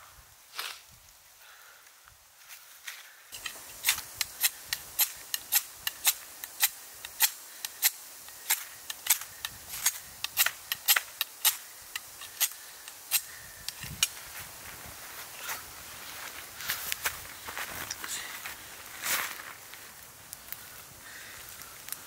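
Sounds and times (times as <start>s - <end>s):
faint steady hiss: 0.0s - 22.0s
sharp cracks and pops: 3.4s - 14.2s.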